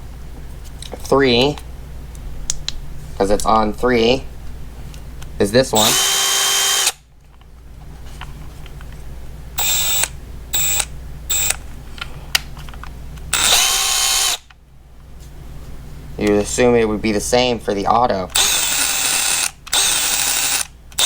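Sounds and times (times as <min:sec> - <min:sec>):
impact wrench motor whining: 0:05.8 - 0:07.0, 0:09.6 - 0:11.6, 0:13.3 - 0:14.5, 0:18.4 - 0:21.0.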